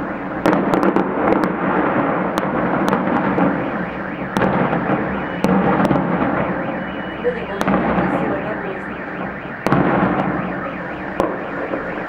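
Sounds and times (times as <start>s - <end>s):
rumble of fireworks bursts: 0.0s - 12.0s
sharp firework cracks: 0.4s - 6.6s.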